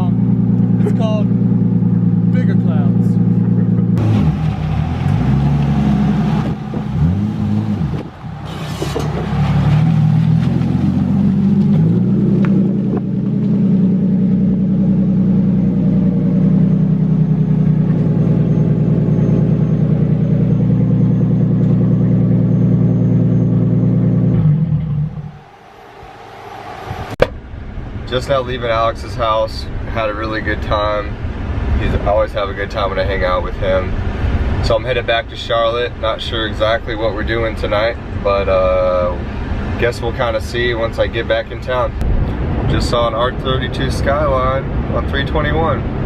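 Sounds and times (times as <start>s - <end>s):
car engine revving: 0.0s - 27.2s.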